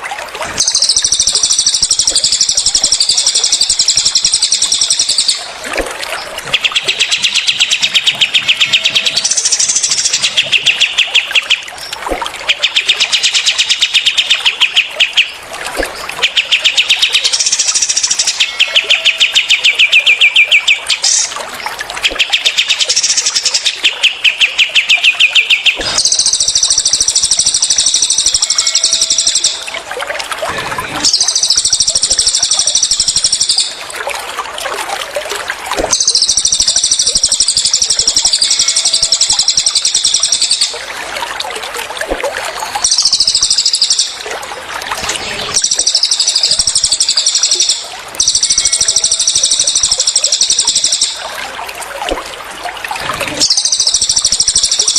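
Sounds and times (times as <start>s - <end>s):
songbirds singing: 6.1s - 21.4s, 22.0s - 29.7s, 35.9s - 40.8s, 53.4s - 54.9s
fast rattling bird trills: 53.4s - 54.9s.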